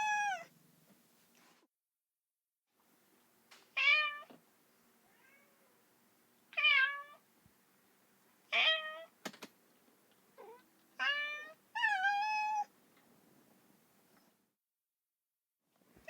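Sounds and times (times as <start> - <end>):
cat meowing: 0.0 - 0.5, 5.0 - 5.7, 6.6 - 7.2, 10.4 - 12.7
sharp clicks: 9.2 - 9.6.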